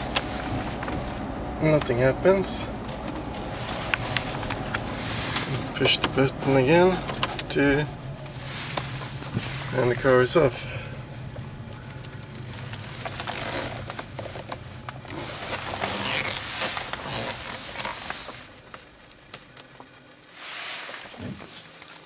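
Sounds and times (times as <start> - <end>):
road and tyre noise in car: 0.0 - 22.0
short rustle: 2.8 - 18.6, 20.3 - 22.0.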